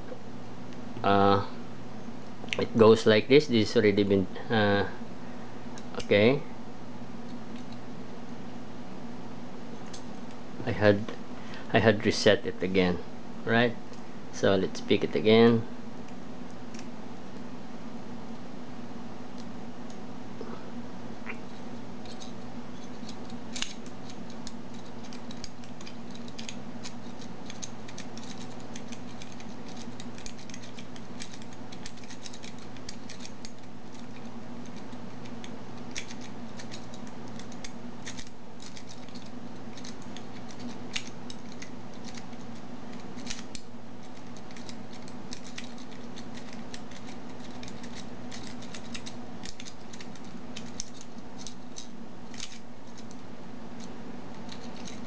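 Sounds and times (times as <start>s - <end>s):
lock pick clicking and scraping: 22.0s - 53.2s.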